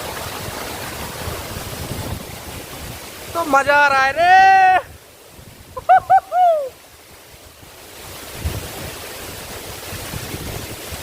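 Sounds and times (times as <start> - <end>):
wind bumps on microphone: 0.0 - 3.4, 8.0 - 11.0
waterfall rushing: 0.0 - 11.0.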